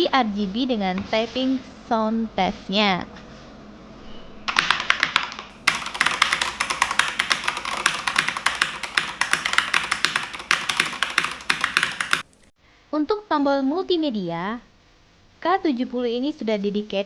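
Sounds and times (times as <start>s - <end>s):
mechanical keyboard typing: 4.6s - 12.4s.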